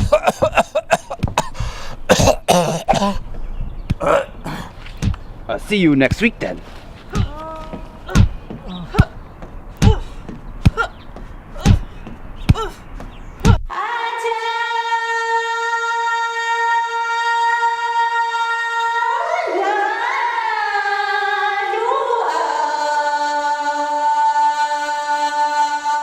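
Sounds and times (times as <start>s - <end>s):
person singing unaccompanied: 7.1s - 9.2s, 13.6s - 26.0s.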